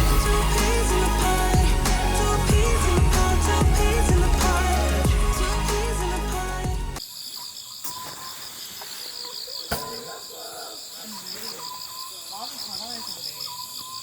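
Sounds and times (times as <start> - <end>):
crickets chirping: 7.0 - 14.0.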